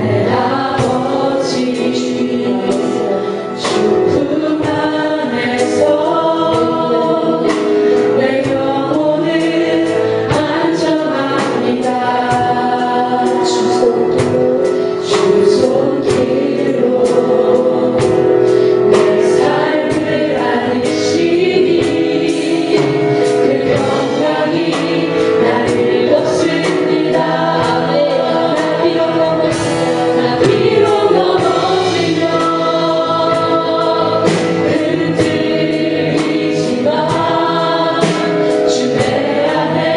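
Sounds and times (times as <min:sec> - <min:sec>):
band accompaniment with beat: 0:00.0 - 0:39.9
congregation singing: 0:00.0 - 0:39.9.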